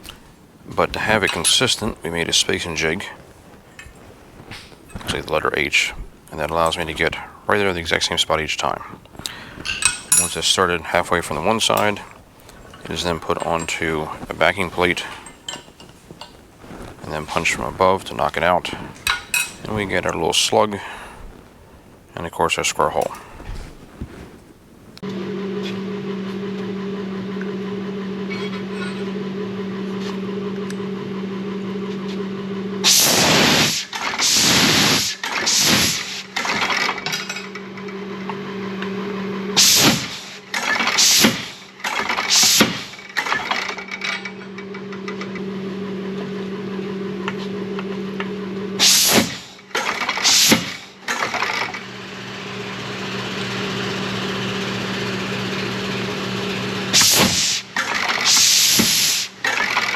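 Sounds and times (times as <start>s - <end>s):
shop machinery hum: 0.0s - 59.9s
loud hissing rasping bursts: 32.9s - 36.4s, 39.6s - 43.0s, 48.8s - 49.5s, 50.1s - 50.9s, 56.9s - 59.4s.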